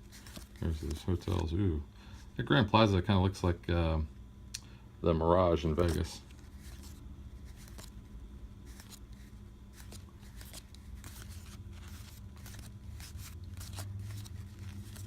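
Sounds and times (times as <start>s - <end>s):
cards being handled: 0.0s - 1.7s, 5.6s - 15.0s
steady low hum: 0.0s - 15.0s.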